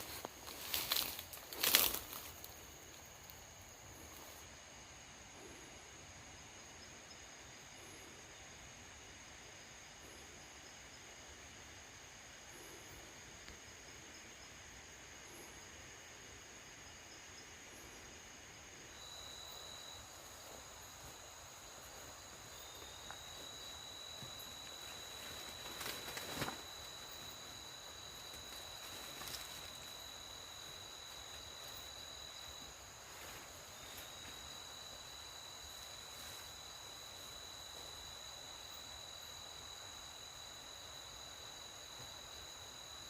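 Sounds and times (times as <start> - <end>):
rustle or crack: 0.0 - 2.6
higher steady insect tone: 0.0 - 43.0
insects trilling: 0.0 - 43.0.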